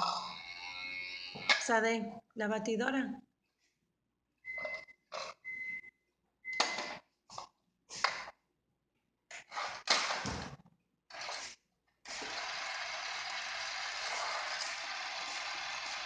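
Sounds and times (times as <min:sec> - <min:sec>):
kitchen blender running: 0:12.1 - 0:16.0.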